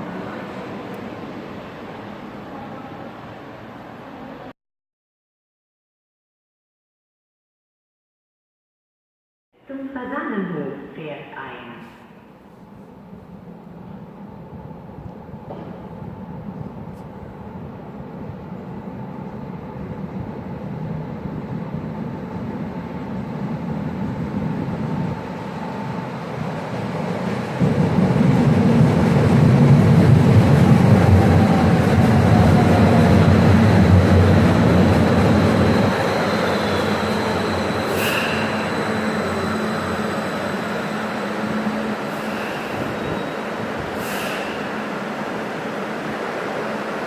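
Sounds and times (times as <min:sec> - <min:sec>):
light-rail train running: 0:00.0 - 0:04.5, 0:12.1 - 0:47.0
high squeal: 0:32.6 - 0:45.0.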